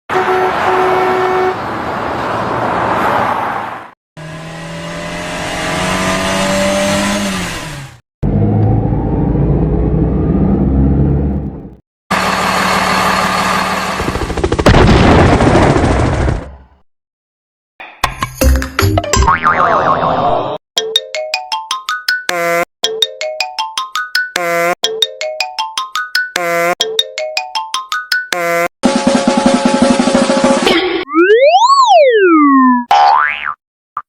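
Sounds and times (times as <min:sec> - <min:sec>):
vehicle horn: 0:00.1 - 0:01.7
engine revving: 0:04.2 - 0:14.3
engines running: 0:04.2 - 0:14.6.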